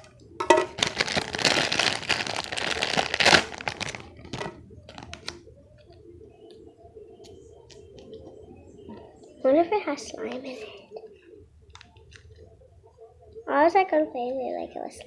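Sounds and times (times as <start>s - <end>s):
plastic packaging crinkling and tearing: 0.0s - 5.5s.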